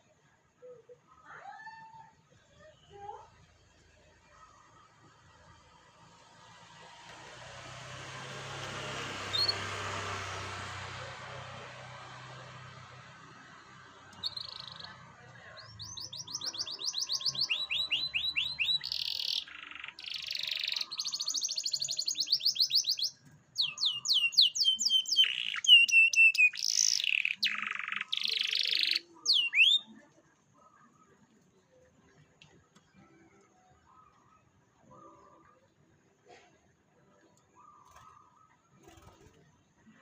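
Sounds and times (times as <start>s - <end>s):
canary singing trills: 8.4s - 30.1s, 37.5s - 39.4s.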